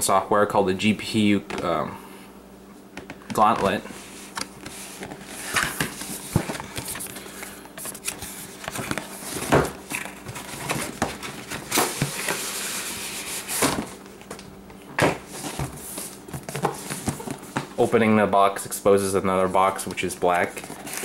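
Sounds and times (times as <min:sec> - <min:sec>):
cardboard sliding and rustling: 0:15.1 - 0:17.6.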